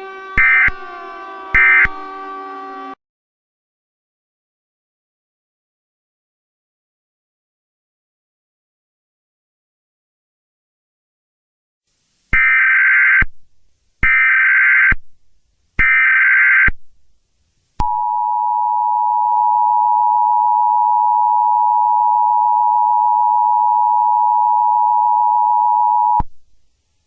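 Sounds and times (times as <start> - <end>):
two-tone attention signal: 0.0 - 2.9
data burst tones: 0.4 - 2.1.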